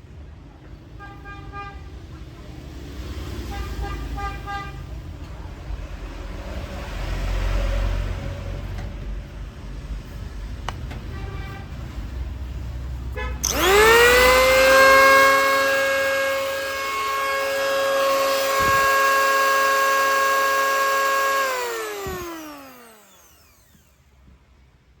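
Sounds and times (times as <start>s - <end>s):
electric planer motor whining: 13.4s - 24.0s.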